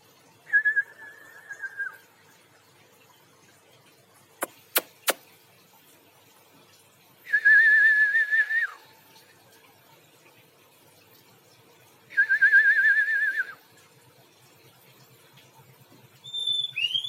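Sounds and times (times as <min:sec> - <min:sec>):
sharp clicks: 0:04.4 - 0:05.2
songbird warbling whistle: 0:16.2 - 0:17.0.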